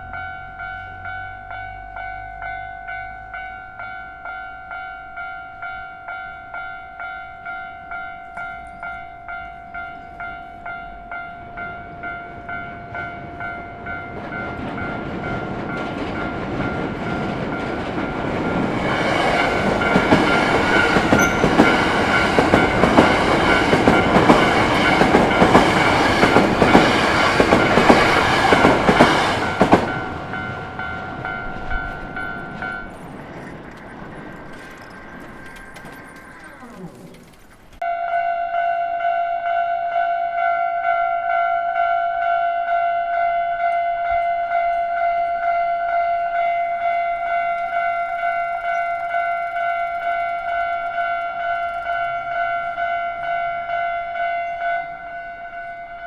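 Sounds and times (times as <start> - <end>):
level-crossing bell ringing: 0.0 - 56.0
train wheels clattering over rails: 12.7 - 37.8.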